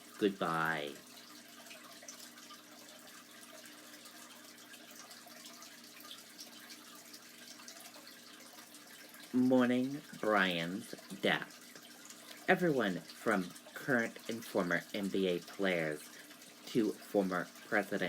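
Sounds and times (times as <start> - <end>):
faint background hum with hiss: 0.0 - 18.0.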